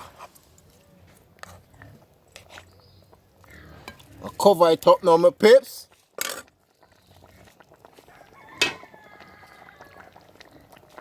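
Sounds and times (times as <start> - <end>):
rooster crowing: 8.1 - 10.3.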